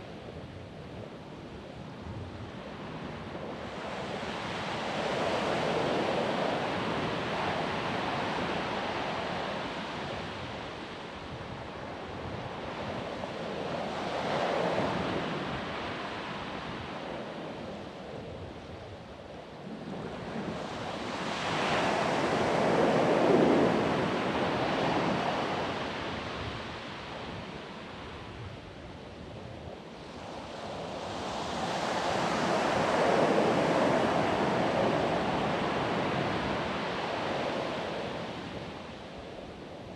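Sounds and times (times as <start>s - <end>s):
ocean surf breaking on beach: 30.3s - 39.1s.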